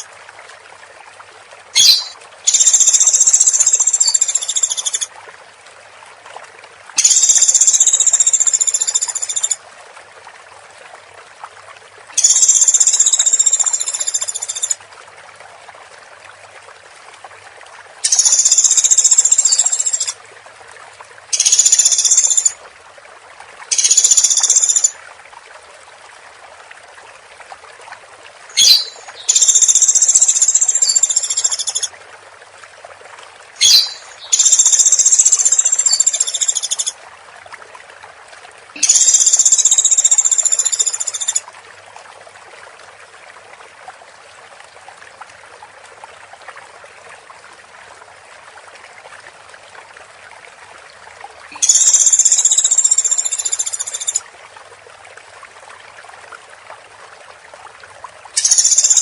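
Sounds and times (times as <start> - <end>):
woodpecker rattling calls: 1.8 - 4.9, 28.6 - 31.9, 33.6 - 36.9.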